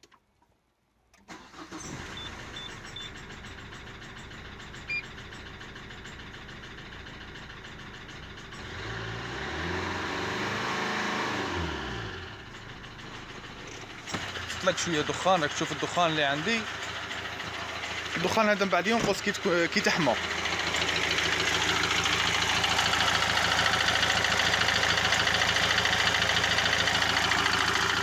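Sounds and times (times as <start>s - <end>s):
diesel engine starting and idling: 1.2s - 28.0s
engine knocking at idle: 2.6s - 9.2s, 12.2s - 28.0s
engine revving: 8.5s - 28.0s.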